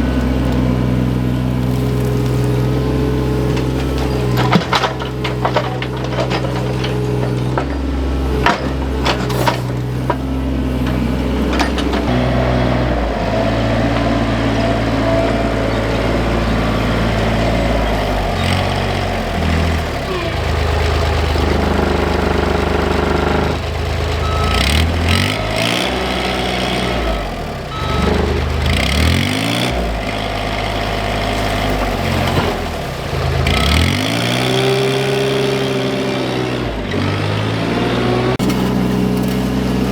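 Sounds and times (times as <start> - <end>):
diesel engine under load: 0.0 - 39.9
metal clanks: 3.3 - 12.3.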